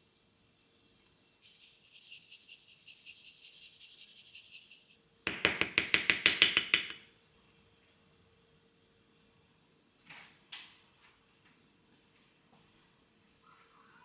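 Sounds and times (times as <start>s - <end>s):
light rhythmic rubbing: 1.4s - 5.0s
sharp knocks: 5.3s - 7.0s.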